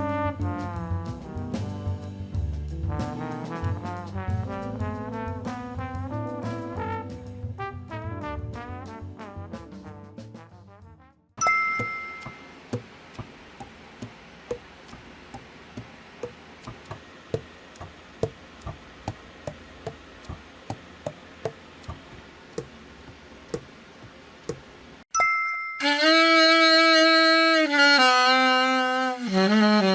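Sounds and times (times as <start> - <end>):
brief ringing tone: 11.4 - 12.5
even ticking clicks: 11.8 - 22.8.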